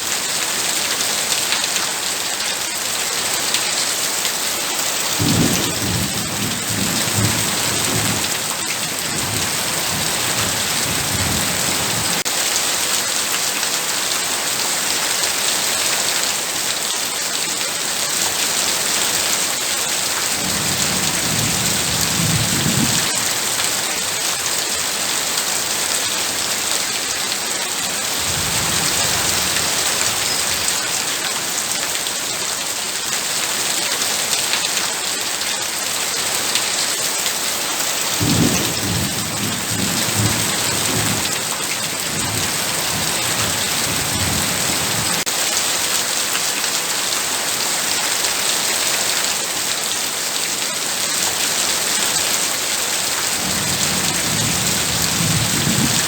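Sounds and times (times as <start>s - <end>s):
heavy rain pouring: 0.0s - 56.0s
low thunder rumbles: 20.4s - 23.1s, 38.2s - 41.4s.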